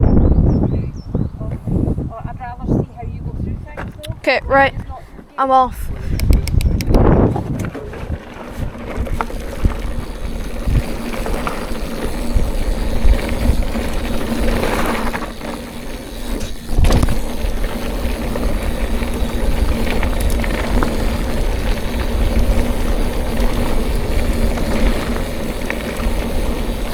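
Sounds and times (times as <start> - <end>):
bike knocking and rattling: 3.6 - 26.9
bike tyres rumbling over ground: 6.9 - 26.9.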